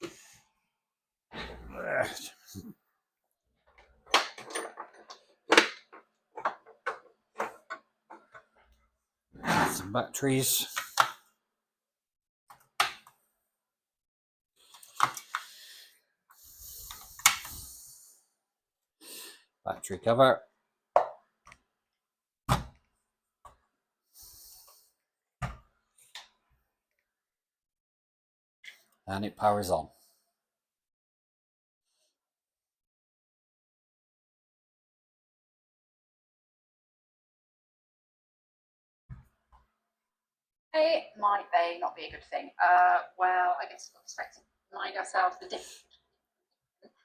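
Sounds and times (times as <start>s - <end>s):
hard objects clicking and knocking: 3.7s - 8.7s.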